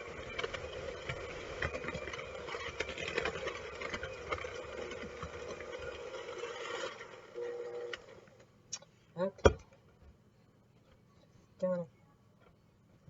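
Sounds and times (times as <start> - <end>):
beaters rattling in a bowl: 0.0 - 7.0
electric mixer running: 0.0 - 8.4.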